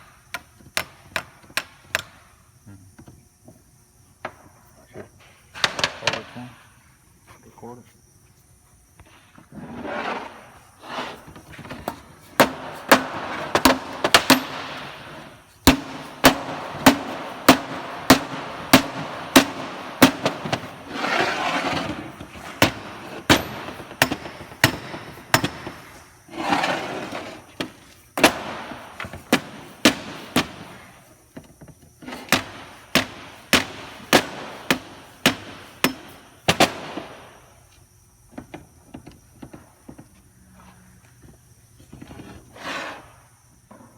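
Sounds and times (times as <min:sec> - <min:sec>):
rough scraping: 0:09.5 - 0:11.6, 0:19.7 - 0:23.2, 0:26.3 - 0:27.5.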